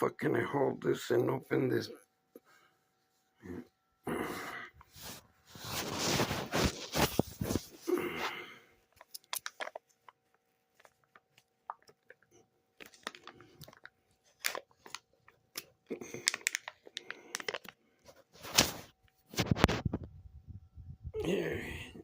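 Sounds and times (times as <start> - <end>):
food packet crinkling: 5.0 - 7.8, 8.9 - 20.1.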